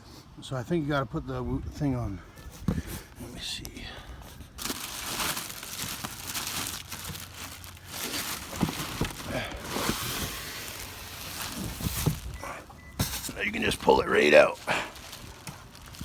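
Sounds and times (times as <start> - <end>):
plastic wrapping crinkling: 4.4 - 16.0.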